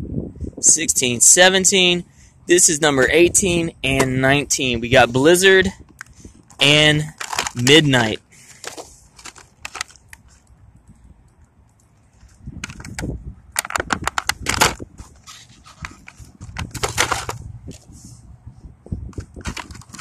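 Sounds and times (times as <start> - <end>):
plastic packaging crinkling: 7.1 - 7.7.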